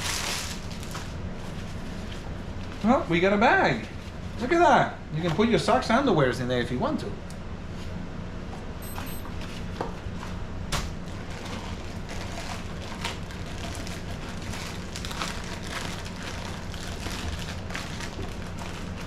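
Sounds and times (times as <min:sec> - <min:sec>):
plastic packaging crinkling: 0:00.0 - 0:03.1, 0:10.9 - 0:19.0
steady low hum: 0:00.0 - 0:19.0.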